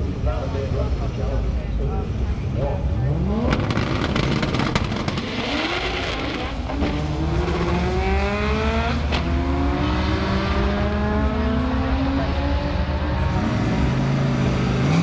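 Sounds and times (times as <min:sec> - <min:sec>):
drag racing car accelerating: 0:03.0 - 0:15.0.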